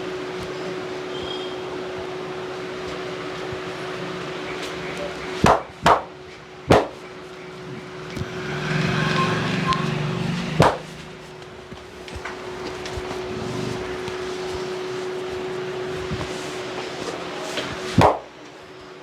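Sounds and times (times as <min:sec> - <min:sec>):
roadside street noise: 0:00.0 - 0:19.0
hands slapping head: 0:05.4 - 0:06.1, 0:06.7 - 0:07.0, 0:10.6 - 0:10.9, 0:18.0 - 0:18.3.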